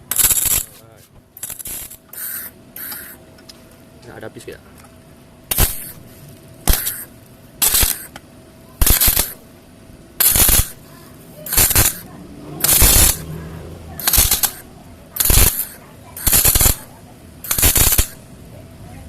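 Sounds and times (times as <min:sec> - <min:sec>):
arc welder crackling: 0:00.0 - 0:03.3, 0:05.5 - 0:08.2, 0:08.8 - 0:09.6, 0:10.2 - 0:18.3.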